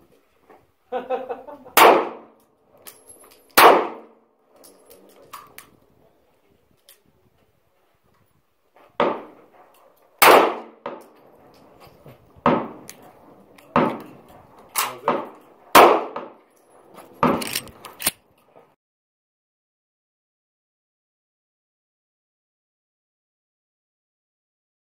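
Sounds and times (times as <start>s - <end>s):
shots striking steel targets: 1.8s - 2.4s, 3.3s - 4.2s, 9.0s - 9.5s, 10.2s - 11.2s, 12.4s - 13.0s, 13.6s - 16.5s.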